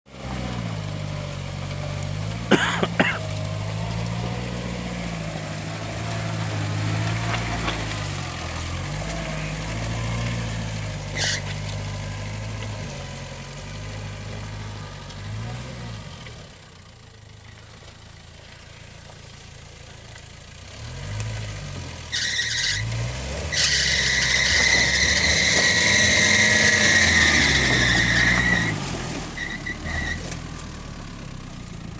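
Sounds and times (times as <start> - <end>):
off-road vehicle engine revving: 0.1 - 31.9
loud high squeal: 23.5 - 28.8.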